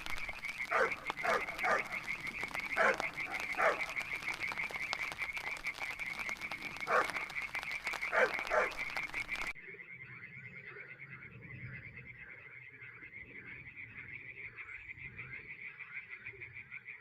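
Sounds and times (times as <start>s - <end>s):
frog calls sliding downward: 0.0s - 9.6s
frogs trilling: 0.0s - 17.0s.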